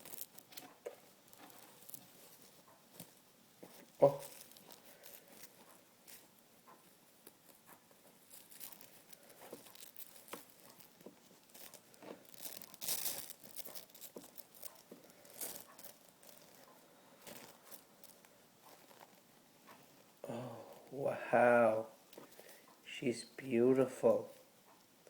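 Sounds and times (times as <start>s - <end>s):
packaging crinkling and tearing: 0.0s - 2.6s, 3.7s - 6.2s, 8.2s - 19.2s
small clicks and scratches: 0.0s - 20.2s.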